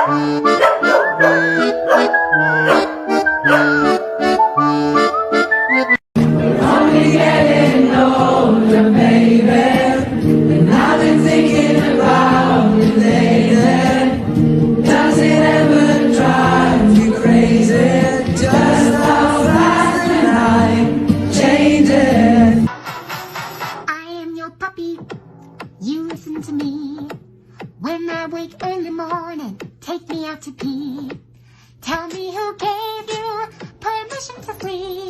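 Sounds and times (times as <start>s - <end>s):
choir singing with music: 0.0s - 22.9s.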